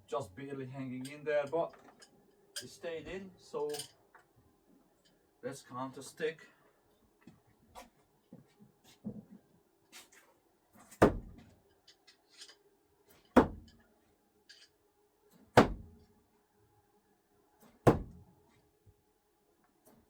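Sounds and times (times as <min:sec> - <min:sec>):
screwdrivers striking target: 0:11.0 - 0:11.5, 0:13.2 - 0:13.8, 0:15.6 - 0:16.0, 0:17.9 - 0:18.2.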